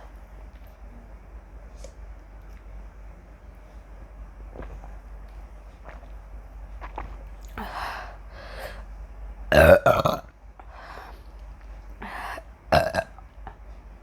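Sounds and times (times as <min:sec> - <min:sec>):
breathy sounds: 0:07.4 - 0:08.8
woman burping: 0:09.5 - 0:10.2, 0:12.7 - 0:13.1.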